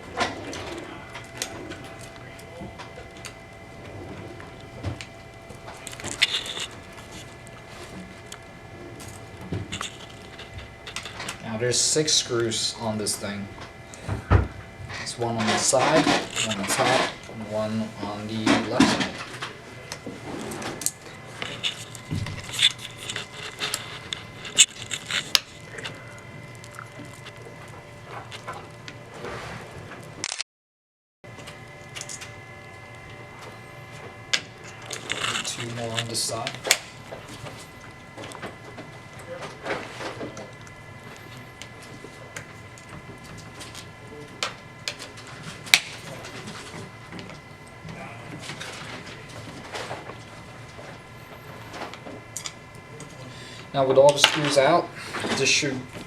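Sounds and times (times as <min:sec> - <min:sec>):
small clicks and scrapes: 0:00.2 - 0:11.4, 0:14.9 - 0:17.4, 0:18.7 - 0:30.4, 0:31.3 - 0:47.5.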